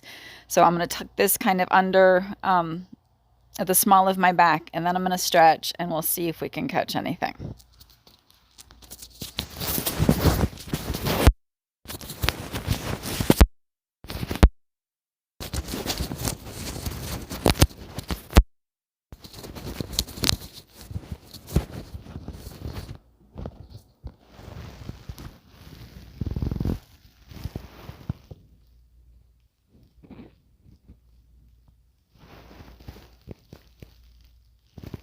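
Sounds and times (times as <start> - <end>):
clothing rubbing against microphone: 7.4 - 13.5, 14.1 - 14.5, 15.4 - 18.4, 19.1 - 28.8, 29.7 - 35.0.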